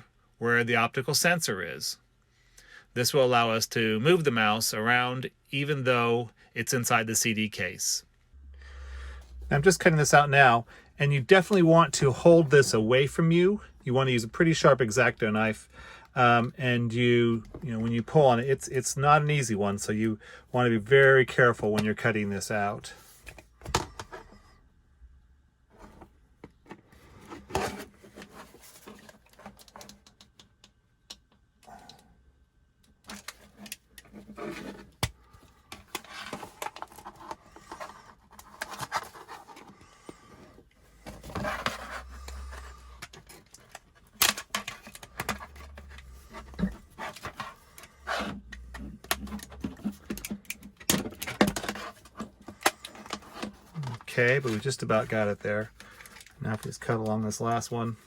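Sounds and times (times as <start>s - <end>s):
knife scraping plastic: 35.7s - 57.1s.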